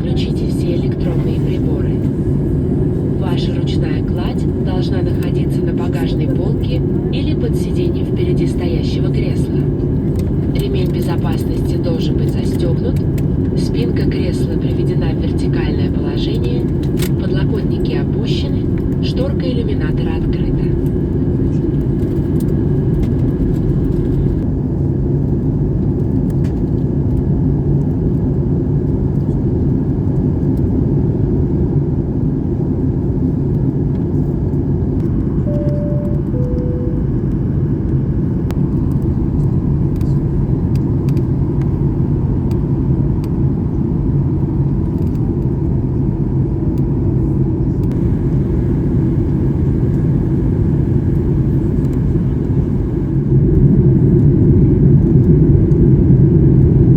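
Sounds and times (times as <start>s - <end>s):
aircraft cabin engine rumble: 0.0s - 56.9s
two-tone cabin chime: 35.4s - 37.5s.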